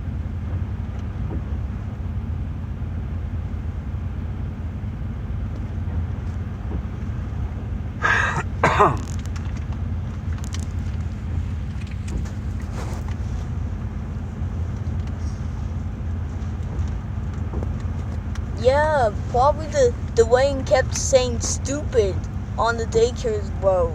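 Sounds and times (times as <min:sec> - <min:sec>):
car cabin rumble: 0:00.0 - 0:23.9
person clearing throat: 0:08.0 - 0:09.1.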